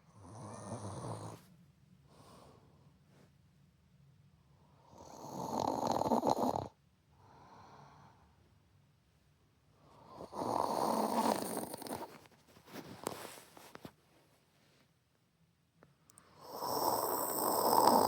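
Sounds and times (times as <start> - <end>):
woman snoring: 0.2 - 1.4, 4.9 - 6.7, 10.2 - 12.1, 16.4 - 18.0
soft breath: 1.3 - 3.4, 7.2 - 8.6, 9.8 - 14.0.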